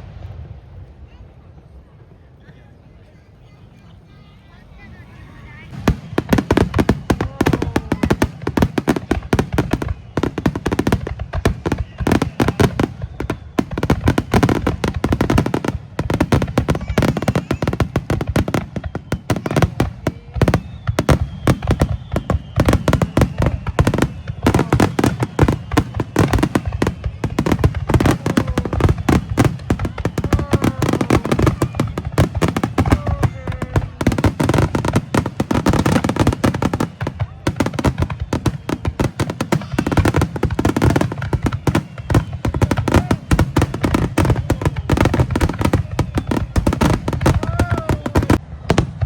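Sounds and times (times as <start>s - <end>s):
fireworks bangs and crackles: 0.0s - 2.2s, 4.0s - 49.0s.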